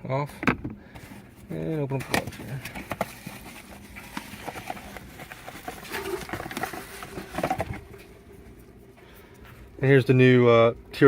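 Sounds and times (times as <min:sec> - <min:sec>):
cardboard packaging rustling: 0:01.0 - 0:09.7.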